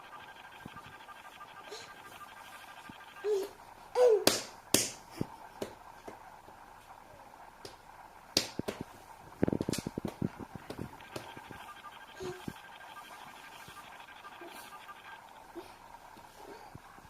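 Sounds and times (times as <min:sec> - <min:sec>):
hands slapping the floor: 0:04.2 - 0:05.0, 0:05.6 - 0:06.2, 0:08.4 - 0:08.9, 0:09.6 - 0:11.3.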